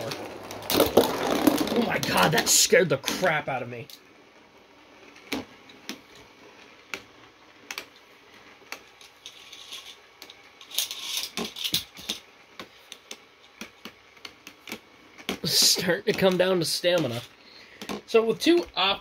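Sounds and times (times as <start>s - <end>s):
plastic spinning tops clashing: 0.0s - 3.3s, 8.6s - 18.7s.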